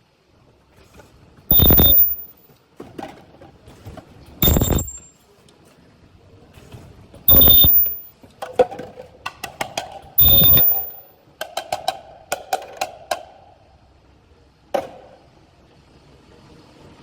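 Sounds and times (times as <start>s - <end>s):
sharp mechanical clicks: 1.5s - 2.3s, 4.4s - 5.0s, 7.3s - 8.0s, 10.2s - 11.0s
ultrasonic welder high whine: 1.5s - 2.3s, 4.4s - 5.0s, 7.3s - 8.1s, 10.2s - 11.0s.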